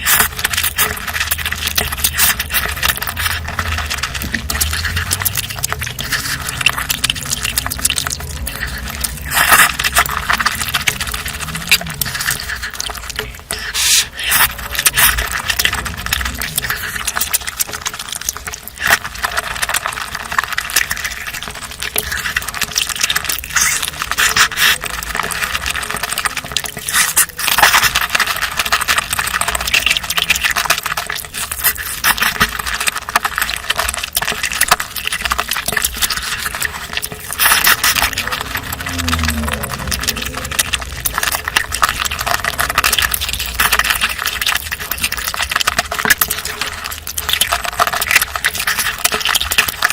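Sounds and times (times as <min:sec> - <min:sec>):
person chewing and slurping: 0:00.0 - 0:49.9.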